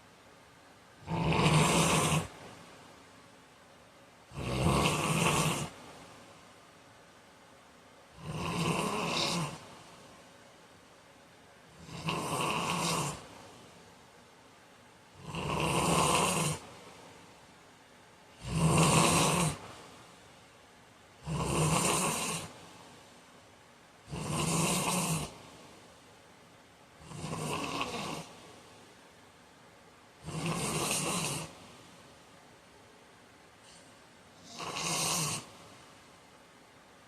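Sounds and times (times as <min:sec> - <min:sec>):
man snoring: 0:01.0 - 0:02.4, 0:04.3 - 0:05.8, 0:08.2 - 0:09.7, 0:11.7 - 0:13.3, 0:15.2 - 0:16.7, 0:18.4 - 0:19.8, 0:21.2 - 0:22.6, 0:24.1 - 0:25.4, 0:27.0 - 0:28.4, 0:30.2 - 0:31.6, 0:34.4 - 0:35.5.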